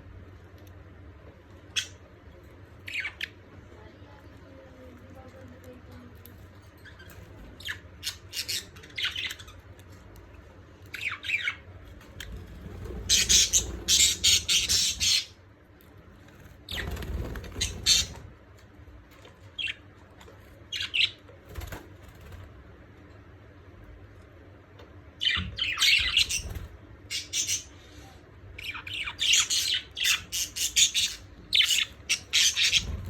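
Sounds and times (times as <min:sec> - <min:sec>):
birds chirping and squawking: 0:01.6 - 0:03.5, 0:06.5 - 0:10.1, 0:10.8 - 0:15.4, 0:16.2 - 0:18.6, 0:19.2 - 0:21.8, 0:25.2 - 0:33.0.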